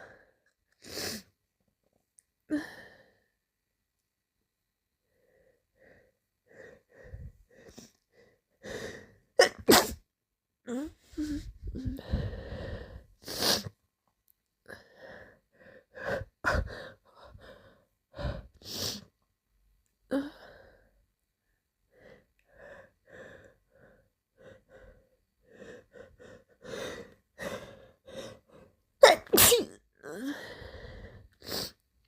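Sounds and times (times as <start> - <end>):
quick gasping breaths: 5.3 - 9.2, 11.0 - 13.7
person sneezing: 9.4 - 10.0, 29.0 - 29.8.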